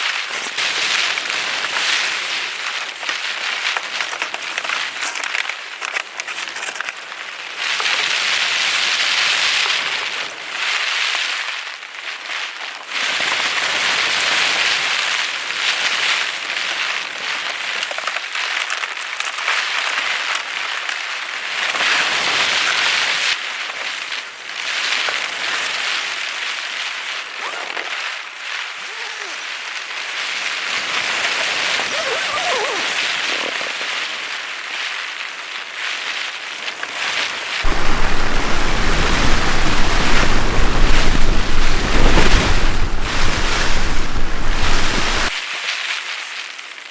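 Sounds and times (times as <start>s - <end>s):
heavy rain: 37.7s - 45.4s
wind buffeting microphone: 37.7s - 45.4s.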